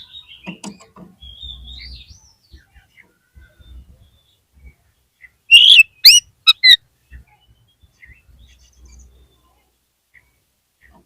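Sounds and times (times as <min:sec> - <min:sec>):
faint bird chirps: 0:00.0 - 0:11.0
bird calling with sharp whistles: 0:05.5 - 0:06.8.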